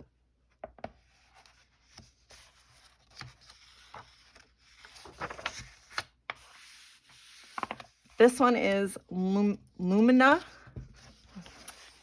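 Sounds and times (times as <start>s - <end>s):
paper rustling: 1.0s - 8.8s, 10.3s - 12.0s.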